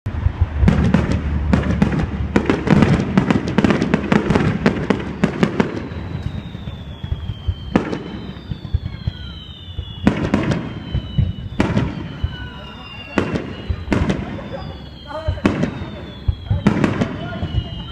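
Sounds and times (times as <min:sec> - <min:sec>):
fireworks bangs and crackles: 0:00.1 - 0:17.9.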